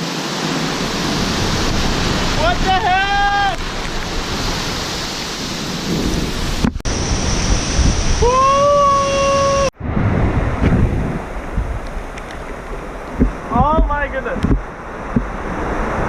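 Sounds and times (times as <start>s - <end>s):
waterfall rushing: 0.0s - 9.8s
ocean surf: 0.0s - 16.0s
wind buffeting microphone: 0.5s - 16.0s
man shouting woo: 2.6s - 3.6s, 8.2s - 9.7s.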